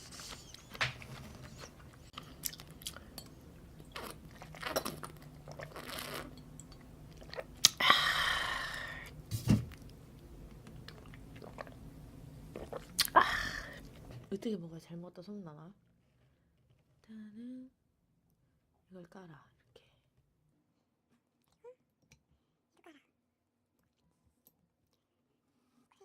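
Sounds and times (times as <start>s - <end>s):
mouth chewing with wet clicks: 2.1s - 7.8s, 10.5s - 11.9s.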